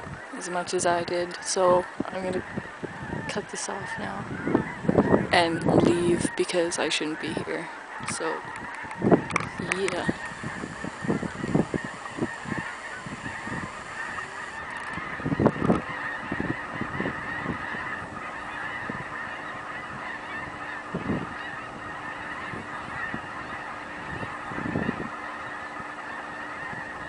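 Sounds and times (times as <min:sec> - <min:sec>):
flock of birds calling: 0:00.0 - 0:27.0.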